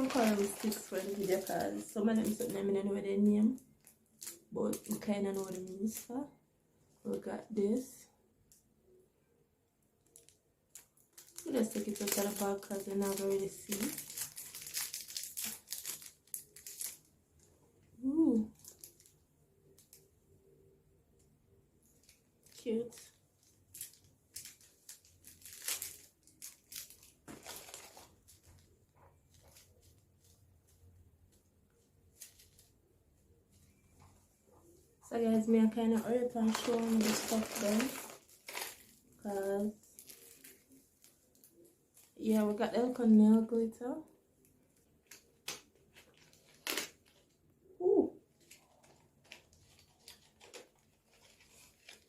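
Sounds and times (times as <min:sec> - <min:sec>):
plastic packaging crinkling: 0:00.0 - 0:06.1, 0:10.0 - 0:20.6, 0:21.8 - 0:30.9, 0:31.7 - 0:32.9, 0:35.8 - 0:43.0, 0:44.4 - 0:47.4, 0:48.3 - 0:52.0
woman saying ooh: 0:47.8 - 0:48.2.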